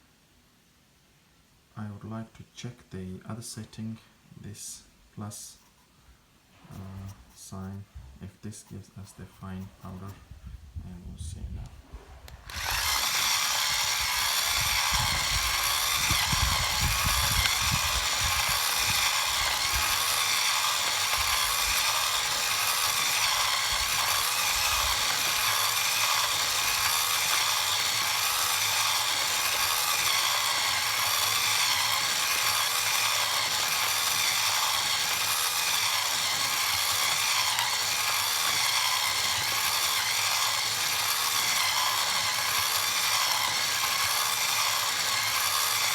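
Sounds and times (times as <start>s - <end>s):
coffee grinder grinding beans: 12.4s - 45.9s.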